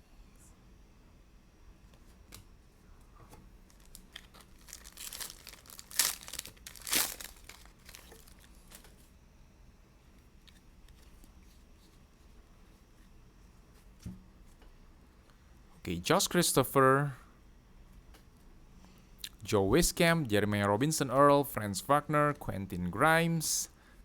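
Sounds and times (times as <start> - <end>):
foil wrapper crinkling and tearing: 3.7 - 8.9.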